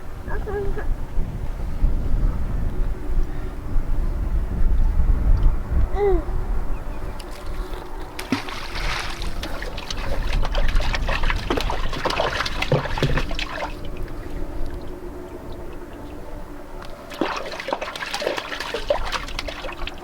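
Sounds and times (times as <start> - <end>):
steady low rumble: 0.0 - 20.0
water splashing and trickling: 7.2 - 20.0.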